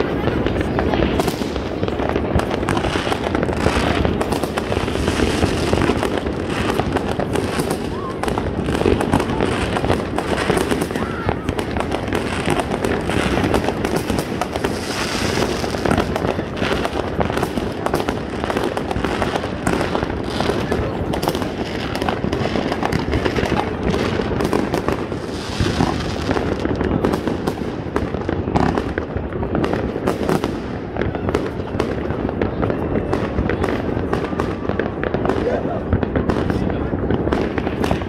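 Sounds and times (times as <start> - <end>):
voices: 0.0 - 29.4
fireworks bangs and crackles: 0.0 - 38.0.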